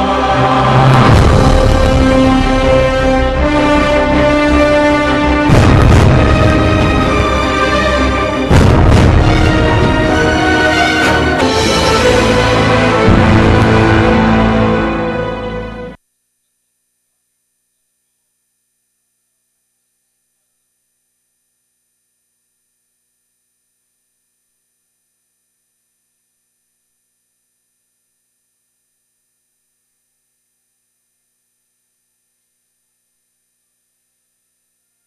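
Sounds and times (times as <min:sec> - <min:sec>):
closing music: 0:00.0 - 0:16.0
faint steady hum: 0:15.8 - 0:35.0.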